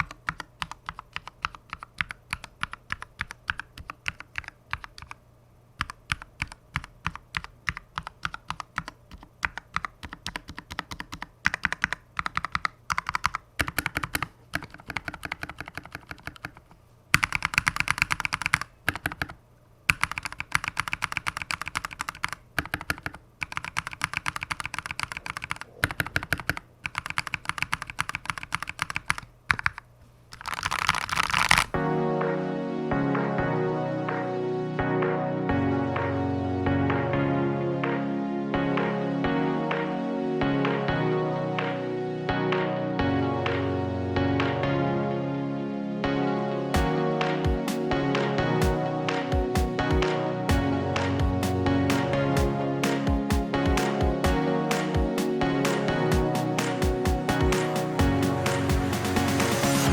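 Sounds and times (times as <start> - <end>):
typing on mechanical keyboard: 0.0 - 5.2, 5.8 - 31.7.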